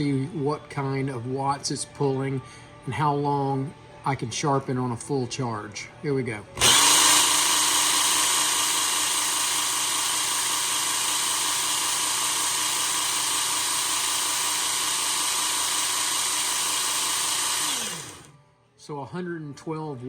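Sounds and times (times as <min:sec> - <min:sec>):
belt sharpener motor whir: 0:06.6 - 0:18.4.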